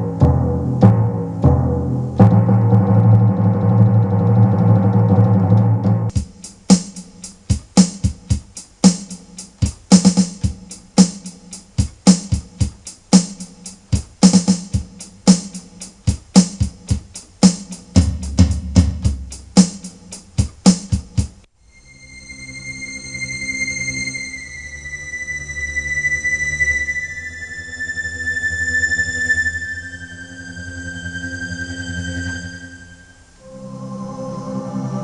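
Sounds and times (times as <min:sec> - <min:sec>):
electronic drum beat: 0:00.0 - 0:21.5
low sustained tone: 0:21.7 - 0:35.0.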